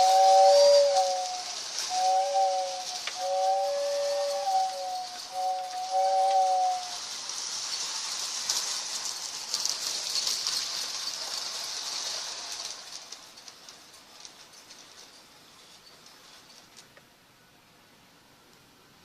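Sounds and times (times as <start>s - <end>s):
model train two-tone whistle: 0.0s - 7.2s
model train rattling on track: 0.0s - 18.9s.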